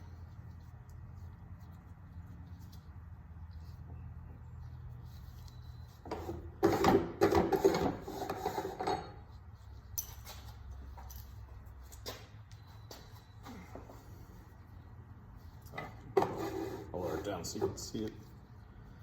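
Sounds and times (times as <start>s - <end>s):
metal wrench clinking and scraping: 8.7s - 11.5s.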